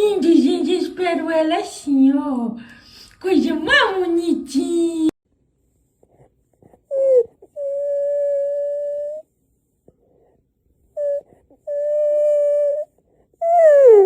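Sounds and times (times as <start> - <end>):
dog whining: 6.6 - 9.3, 10.9 - 14.0.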